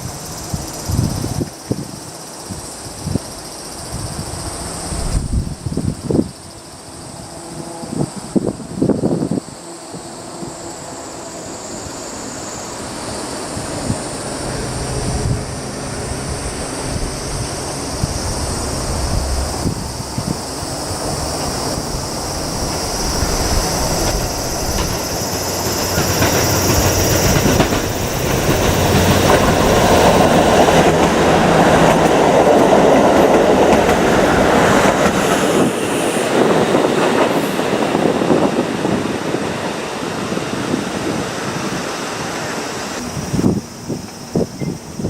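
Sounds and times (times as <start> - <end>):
train wheels clacking over rail joints: 19.1 - 39.0.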